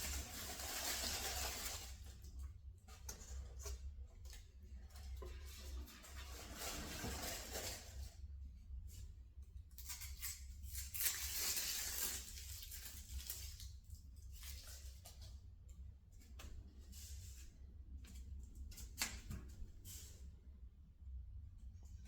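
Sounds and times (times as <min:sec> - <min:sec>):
wrapping rustling and tearing: 0:00.0 - 0:02.3, 0:05.4 - 0:08.2, 0:09.8 - 0:15.2.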